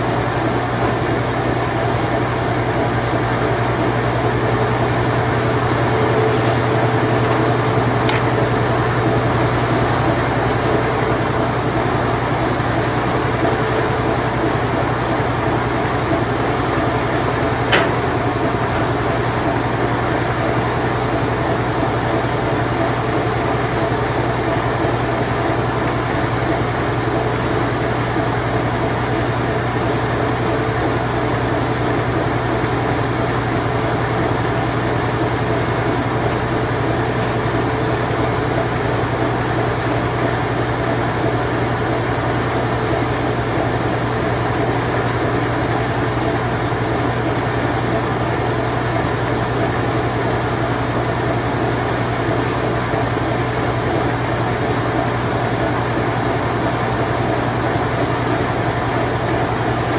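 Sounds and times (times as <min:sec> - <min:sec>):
washing machine spinning: 0:00.0 - 0:59.9
washing machine click: 0:17.7 - 0:18.2.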